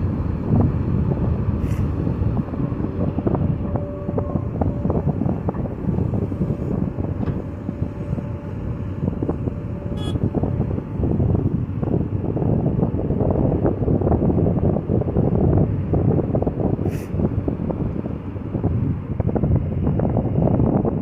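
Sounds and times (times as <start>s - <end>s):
heavy machinery diesel engine: 0.0s - 21.0s
wind buffeting microphone: 0.0s - 21.0s
short high squeak: 10.0s - 10.2s.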